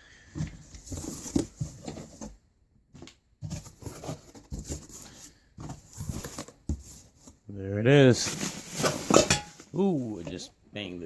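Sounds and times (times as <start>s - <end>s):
packaging rustling: 8.2s - 9.7s.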